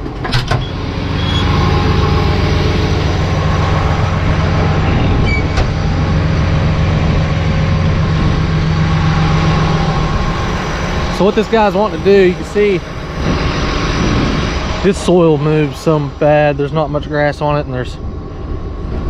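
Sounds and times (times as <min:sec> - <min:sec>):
diesel engine running: 0:00.0 - 0:19.0.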